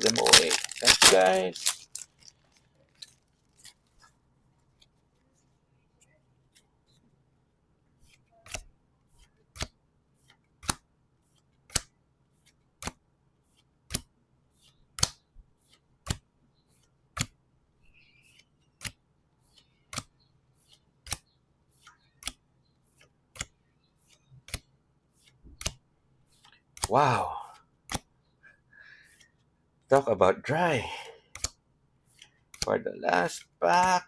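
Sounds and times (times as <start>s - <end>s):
card edges ticking: 0.0s - 2.3s, 32.6s - 34.0s
cards snapped down: 0.0s - 2.3s.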